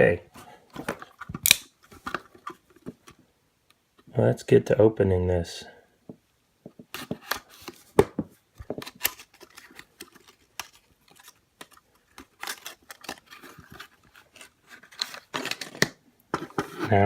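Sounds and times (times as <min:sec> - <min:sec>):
handling plastic blister package: 0:06.9 - 0:17.0.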